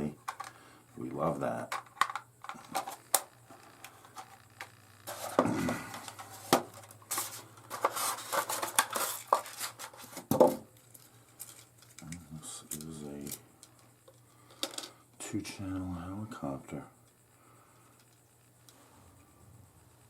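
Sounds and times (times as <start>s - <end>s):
packaging rustling: 1.9s - 10.2s.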